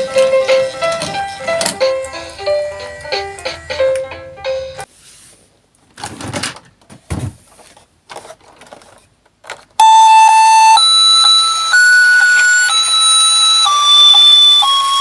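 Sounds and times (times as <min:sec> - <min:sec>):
electronic siren tones: 0:09.8 - 0:15.0.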